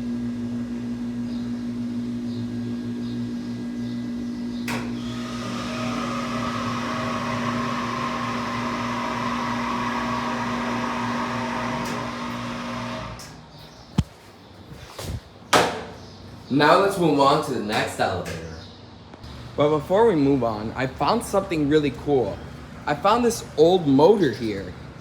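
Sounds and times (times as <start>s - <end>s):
pump motor humming: 4.7s - 13.2s.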